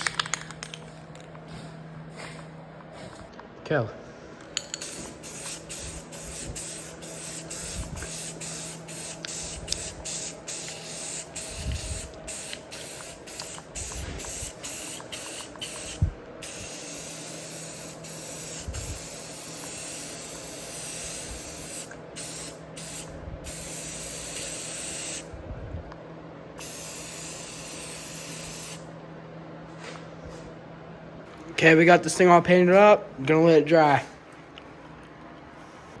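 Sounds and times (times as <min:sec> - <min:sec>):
spray paint can spraying: 0:04.6 - 0:25.3, 0:26.6 - 0:28.9.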